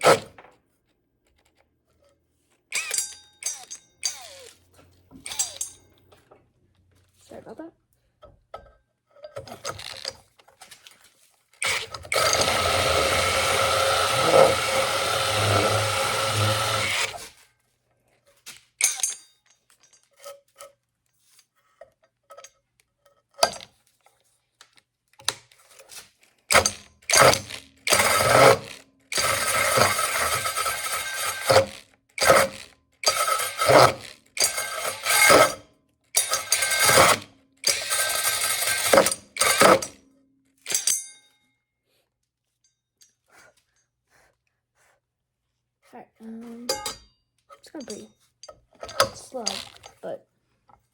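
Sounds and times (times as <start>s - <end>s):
cordless drill with hole saw: 0.0s - 0.3s, 2.7s - 5.7s, 9.6s - 10.1s, 11.6s - 17.4s, 26.5s - 35.6s, 36.2s - 40.0s.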